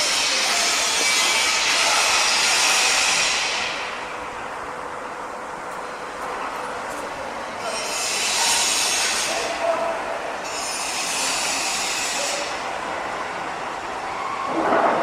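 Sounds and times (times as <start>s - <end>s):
loud high machine hiss: 0.0s - 4.5s, 7.3s - 14.6s.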